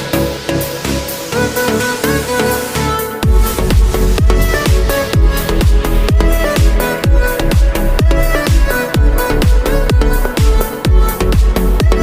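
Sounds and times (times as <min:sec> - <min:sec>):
sustained synth tones: 0:03.0 - 0:08.5
pounding kick drum: 0:03.2 - 0:12.0.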